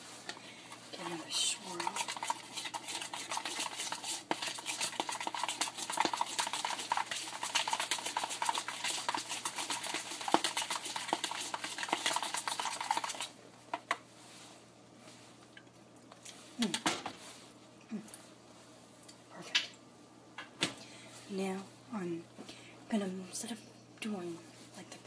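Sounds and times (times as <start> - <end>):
utensil scraping and clinking bowl: 1.1 - 13.3.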